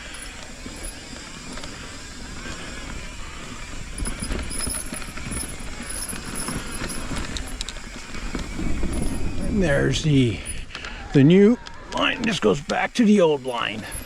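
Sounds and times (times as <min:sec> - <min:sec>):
bike knocks and rattles: 0:00.0 - 0:10.8
bike tyres rumbling on dirt: 0:00.0 - 0:14.0.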